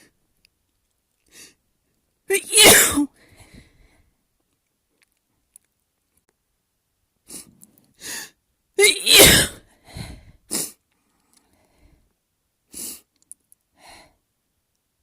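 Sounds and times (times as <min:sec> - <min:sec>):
person sneezing: 0:02.3 - 0:03.1, 0:08.8 - 0:09.6
short breaths: 0:03.2 - 0:04.1, 0:07.3 - 0:08.4, 0:09.6 - 0:12.1.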